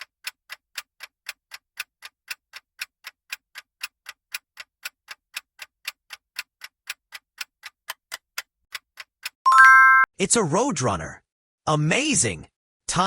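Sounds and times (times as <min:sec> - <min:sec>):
clock ticking: 0:00.0 - 0:10.1.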